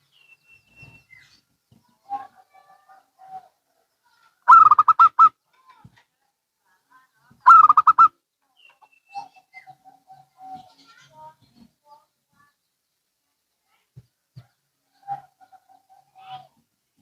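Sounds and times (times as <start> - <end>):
doves cooing: 4.4 - 5.3, 7.4 - 8.1.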